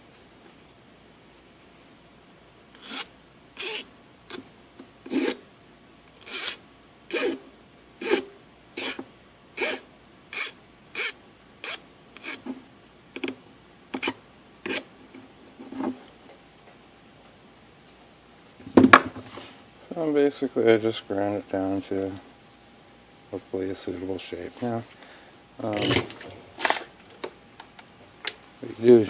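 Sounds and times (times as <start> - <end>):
metal file rasping on copper: 2.8 - 3.9, 5.1 - 5.4, 6.2 - 7.4, 8.0 - 9.0, 9.6 - 12.4.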